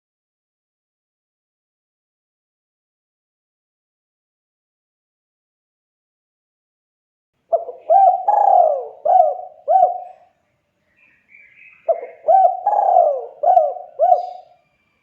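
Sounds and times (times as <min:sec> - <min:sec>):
dove cooing: 0:07.5 - 0:10.3, 0:11.8 - 0:14.6
faint high bird chirp: 0:07.5 - 0:15.0.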